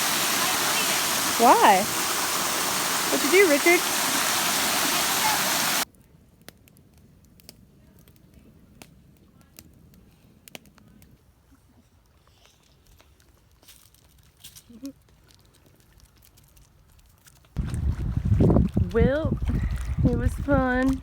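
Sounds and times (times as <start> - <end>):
waterfall rushing loudly: 0.0 - 5.8.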